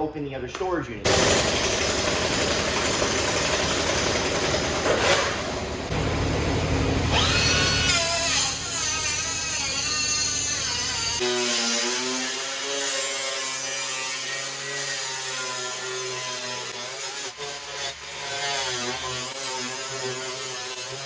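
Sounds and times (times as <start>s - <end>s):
electric power tool whining: 1.1s - 11.8s.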